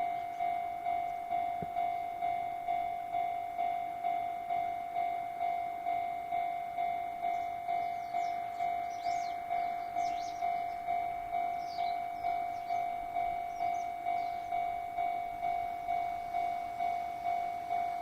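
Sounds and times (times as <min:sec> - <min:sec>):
level-crossing bell ringing: 0:00.0 - 0:18.0
birds chirping: 0:07.2 - 0:18.0.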